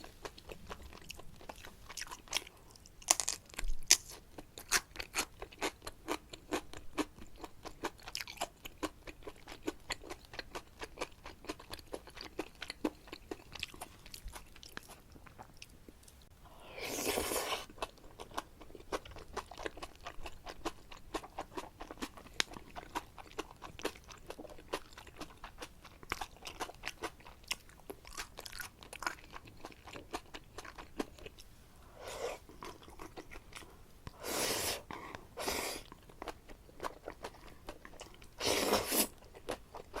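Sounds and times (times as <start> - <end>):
noodle slurp: 38.4 - 39.2.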